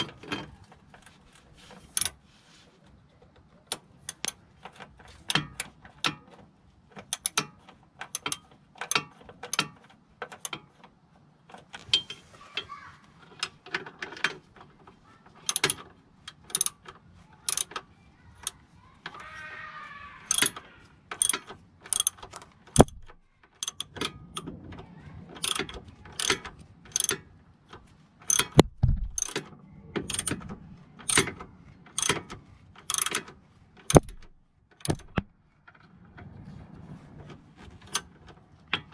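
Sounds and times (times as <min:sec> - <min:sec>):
ratchet wrench clicking: 0:16.5 - 0:16.8, 0:17.5 - 0:17.7, 0:20.3 - 0:22.2, 0:22.8 - 0:24.5, 0:25.4 - 0:27.2, 0:28.3 - 0:29.4, 0:30.1 - 0:30.4, 0:31.0 - 0:31.3, 0:31.9 - 0:33.3, 0:33.9 - 0:35.3
heavy knocks: 0:28.6 - 0:29.3.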